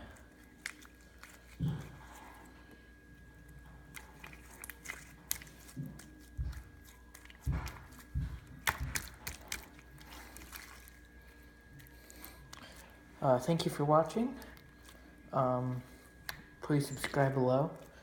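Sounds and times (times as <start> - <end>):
slime squished in hands: 0.0 - 2.5, 3.4 - 12.9.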